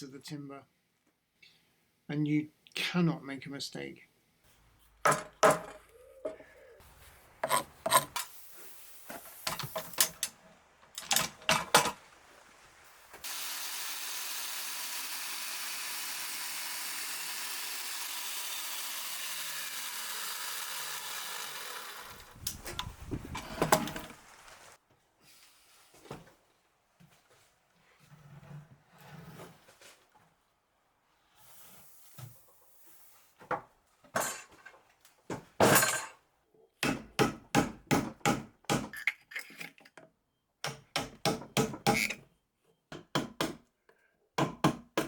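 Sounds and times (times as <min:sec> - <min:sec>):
tools clattering on timber: 0:05.0 - 0:06.4, 0:07.4 - 0:08.3, 0:09.1 - 0:10.4, 0:11.0 - 0:12.0, 0:22.6 - 0:24.2, 0:34.1 - 0:36.2
chain mortiser cutting wood: 0:11.0 - 0:12.1, 0:13.2 - 0:24.3.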